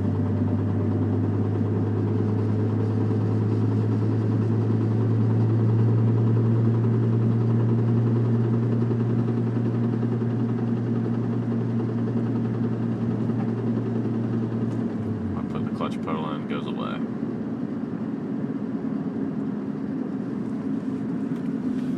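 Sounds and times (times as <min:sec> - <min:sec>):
engine knocking: 0:00.0 - 0:15.9
engine and road hum: 0:00.0 - 0:21.9.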